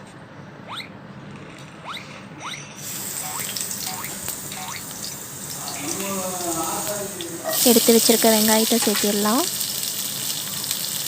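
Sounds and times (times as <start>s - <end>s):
seeds frying in hot oil: 2.8s - 11.0s.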